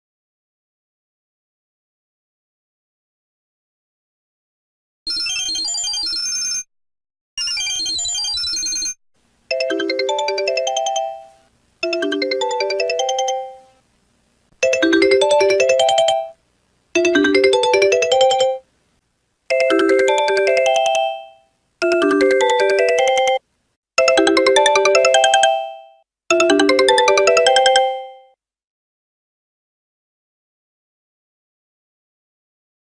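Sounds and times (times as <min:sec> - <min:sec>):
phone ringtone jingle: 0:05.1 - 0:06.7, 0:07.4 - 0:13.8, 0:14.6 - 0:16.4, 0:17.0 - 0:18.6, 0:19.5 - 0:23.4, 0:24.0 - 0:28.4.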